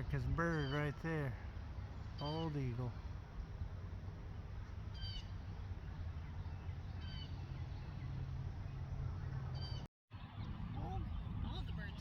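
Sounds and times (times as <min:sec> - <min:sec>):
eagle calling: 0:00.5 - 0:01.0.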